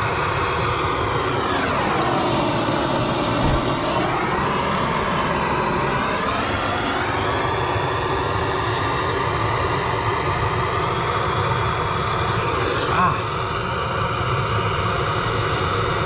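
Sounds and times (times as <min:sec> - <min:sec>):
gas torch flame rushing: 0:03.1 - 0:04.2.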